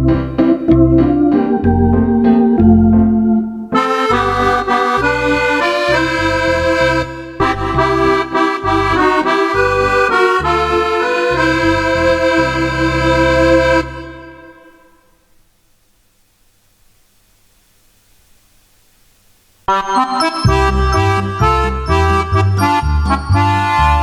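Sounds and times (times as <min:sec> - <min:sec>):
accordion chords and bass notes: 0:00.0 - 0:14.8, 0:19.7 - 0:24.0.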